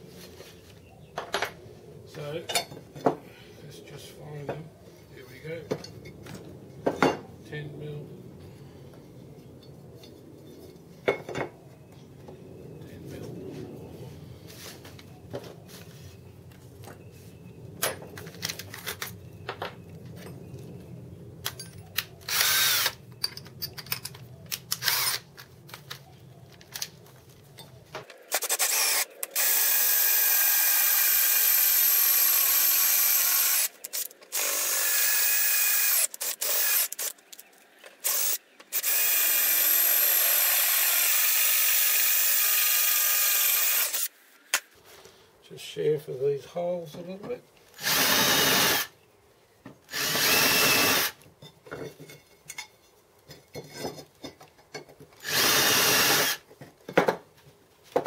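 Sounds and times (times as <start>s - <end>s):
electric drill drilling metal: 22.2s - 23.0s, 24.8s - 25.2s, 28.3s - 37.2s, 38.0s - 44.1s, 47.8s - 48.9s, 49.9s - 51.2s, 55.2s - 56.4s.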